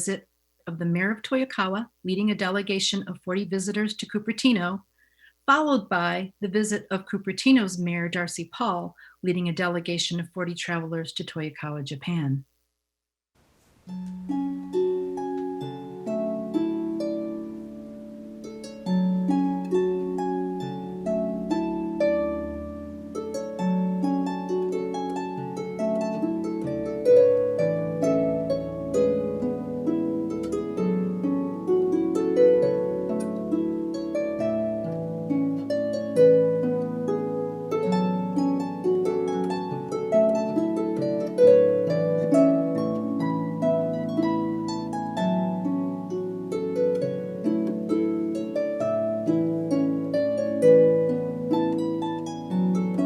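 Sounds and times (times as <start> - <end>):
plucked notes melody: 13.9 - 53.0.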